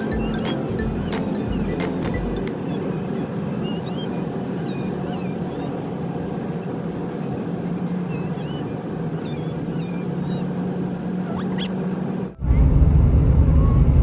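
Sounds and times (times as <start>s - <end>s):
car road noise and engine hum: 0.0s - 14.0s.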